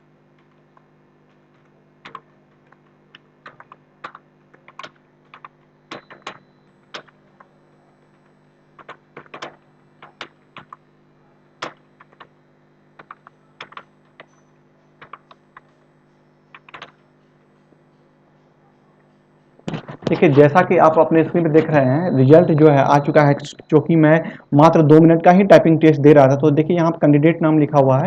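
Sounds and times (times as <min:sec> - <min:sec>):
faint steady hum: 0:00.0 - 0:28.0
keyboard key clicks: 0:02.0 - 0:02.8, 0:08.8 - 0:10.8, 0:15.0 - 0:15.7, 0:16.5 - 0:17.0.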